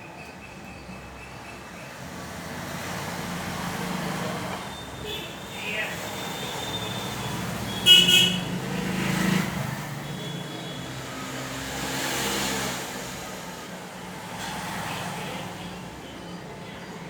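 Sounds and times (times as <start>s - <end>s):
road traffic passing: 0.0s - 17.0s
vehicle horn toot: 4.7s - 8.6s, 10.0s - 11.0s.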